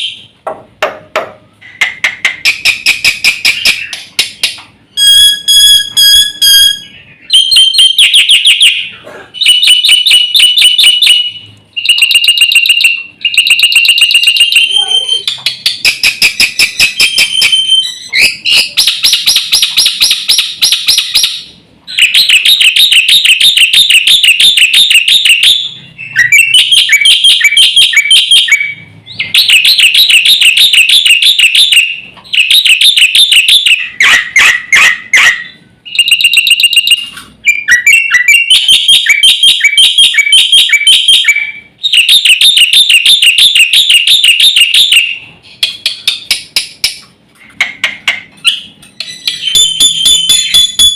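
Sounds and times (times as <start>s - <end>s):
starling chattering: 11.8s - 19.9s.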